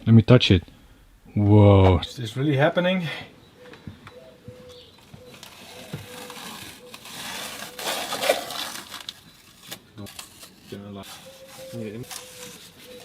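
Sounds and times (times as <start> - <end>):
packaging rustling and scraping: 5.2 - 13.0.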